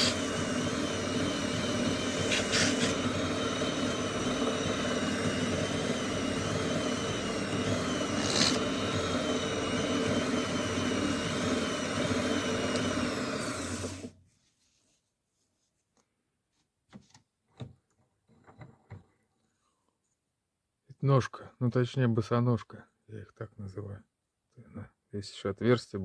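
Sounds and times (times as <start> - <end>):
wood lathe running: 0.0 - 14.1
sharp scrapes: 2.2 - 3.0, 8.1 - 8.7.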